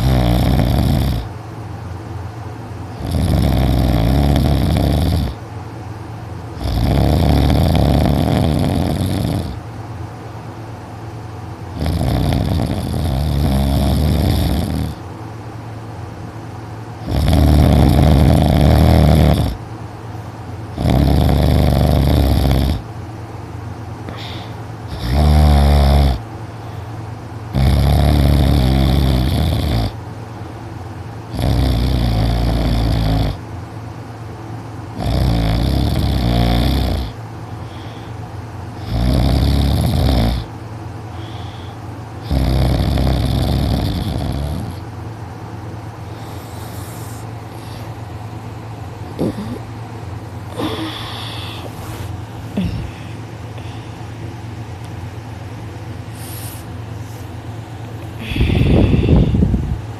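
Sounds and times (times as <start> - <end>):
loud heavy snoring: 0.0 - 1.3, 3.0 - 5.4, 6.6 - 9.6, 11.7 - 15.0, 17.0 - 19.6, 20.7 - 22.9, 24.1 - 26.3, 27.5 - 30.0, 31.3 - 33.4, 35.0 - 38.2, 38.8 - 40.5, 41.1 - 44.9, 46.0 - 48.0, 49.1 - 49.7, 50.5 - 53.0.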